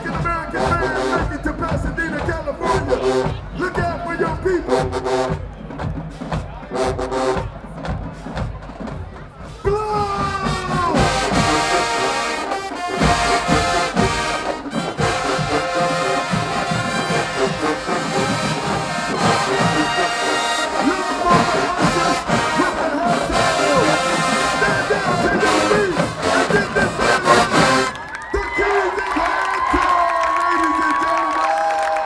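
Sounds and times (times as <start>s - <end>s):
loud brass section: 0.0s - 1.7s, 6.6s - 7.7s, 9.8s - 32.0s
marching band playing: 0.0s - 28.3s
drums beating: 0.0s - 32.0s.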